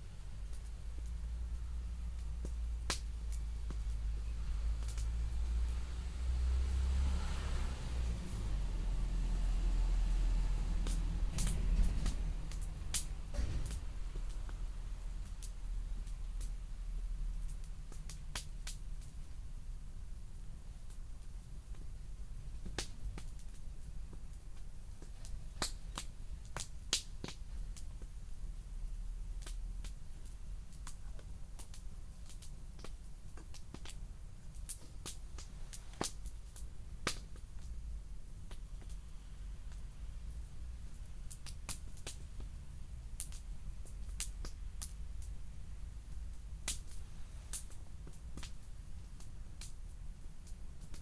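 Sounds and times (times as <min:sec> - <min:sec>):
low steady rumble: 0:00.0 - 0:21.4
campfire wood crackling: 0:00.0 - 0:51.0.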